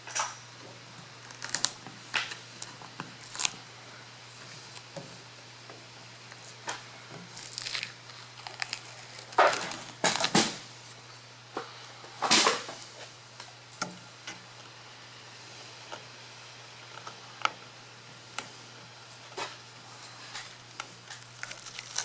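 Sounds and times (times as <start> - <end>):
rustling crinkling handling: 6.2 - 12.9, 19.2 - 22.0.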